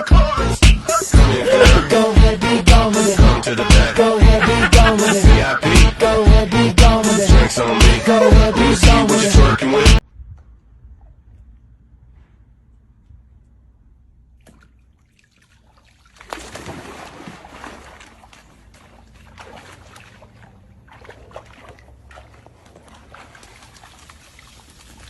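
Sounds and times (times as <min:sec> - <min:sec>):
water splashing and sloshing: 0:14.2 - 0:25.0.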